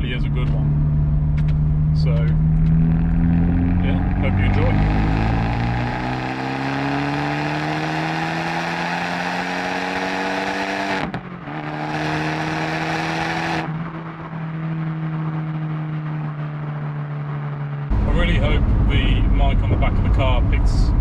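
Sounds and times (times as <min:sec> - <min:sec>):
car engine accelerating: 0:00.0 - 0:21.0.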